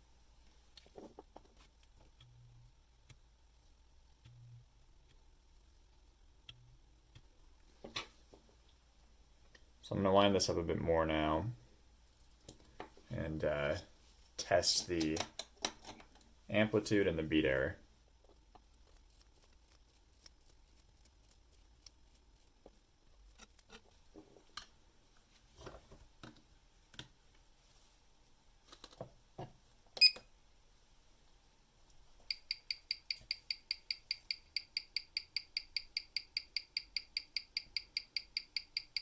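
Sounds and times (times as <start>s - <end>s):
watch ticking: 32.3s - 39.0s.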